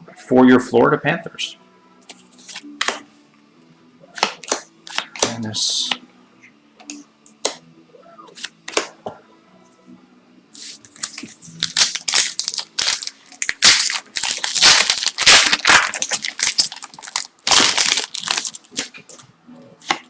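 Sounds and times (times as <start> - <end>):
wrapper tearing and crinkling: 10.8 - 18.9.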